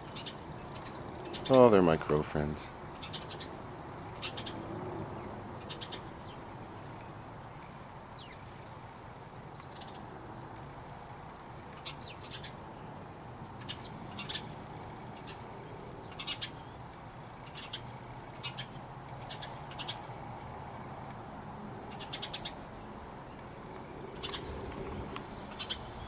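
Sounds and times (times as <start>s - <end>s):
small birds chirping: 0.0s - 21.2s, 21.8s - 26.0s.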